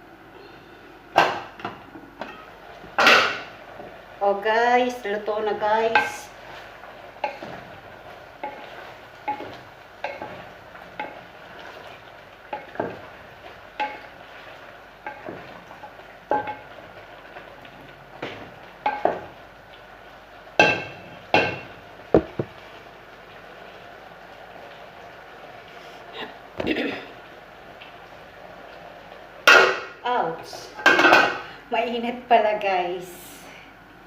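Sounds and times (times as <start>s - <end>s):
low steady sizzle: 0.0s - 34.0s.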